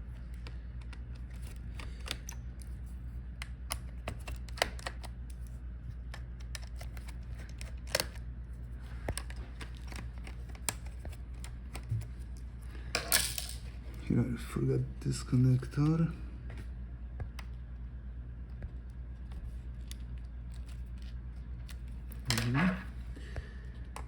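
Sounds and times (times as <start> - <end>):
steady low hum: 0.0 - 24.0
screwdriver clicking on laptop: 9.0 - 12.0.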